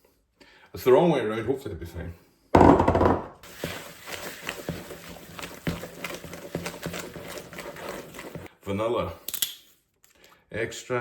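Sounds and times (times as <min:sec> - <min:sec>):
loud thump: 0:02.6 - 0:03.4
utensil tapping mixing bowl: 0:02.6 - 0:08.5.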